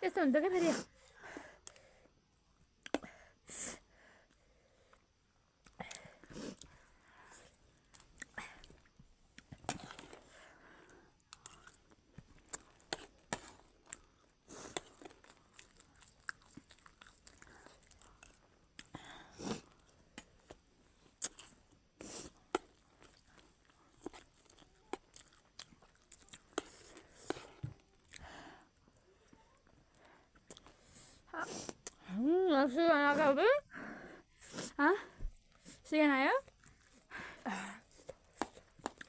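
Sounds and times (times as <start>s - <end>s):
crunchy chewing of snack: 5.6s - 28.6s, 29.6s - 31.0s, 36.4s - 39.0s.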